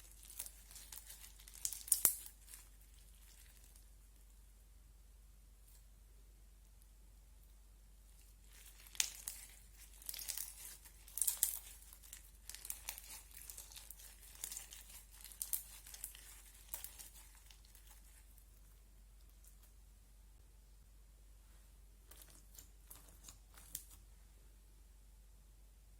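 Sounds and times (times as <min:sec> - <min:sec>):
crunchy slime crackling: 0:00.0 - 0:04.2, 0:08.2 - 0:19.7, 0:22.0 - 0:24.0.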